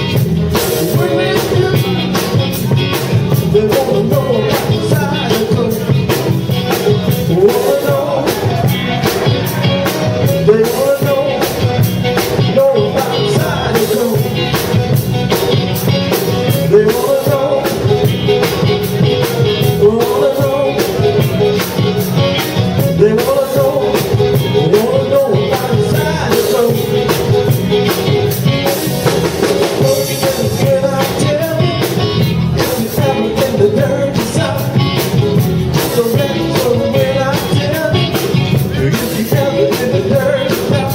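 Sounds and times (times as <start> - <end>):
live blues-rock band playing: 0.0 - 40.9
steady drum beat: 0.0 - 40.9.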